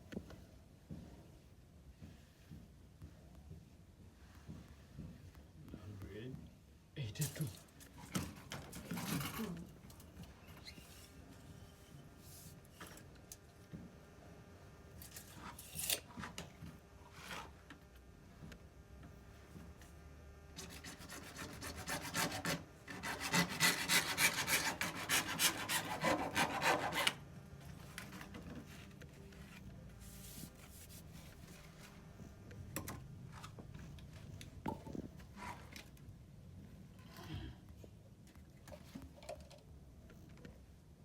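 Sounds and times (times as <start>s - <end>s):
hand tool rasping: 20.6s - 27.2s.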